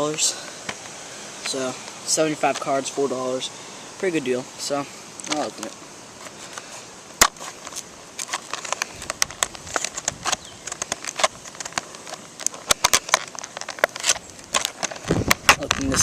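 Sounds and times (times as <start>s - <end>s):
plastic packaging crinkling: 5.3s - 16.0s.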